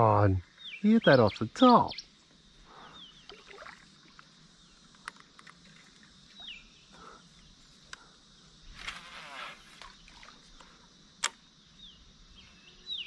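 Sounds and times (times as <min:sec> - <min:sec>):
faint outdoor ambience: 0:00.0 - 0:13.0
bird call sliding down: 0:08.7 - 0:10.0.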